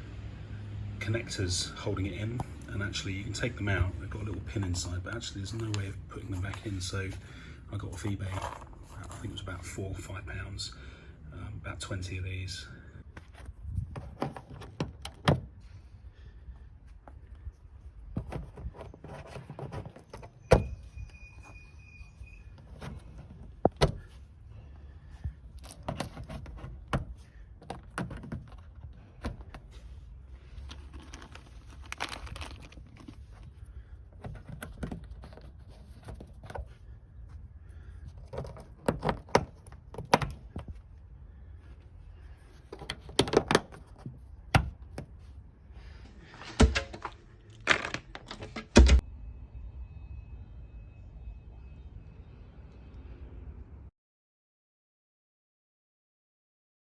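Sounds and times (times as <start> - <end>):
rivets clicking and knocking: 25.1 - 36.8, 37.7 - 40.8, 46.1 - 49.0
plastic rustling: 29.0 - 36.8.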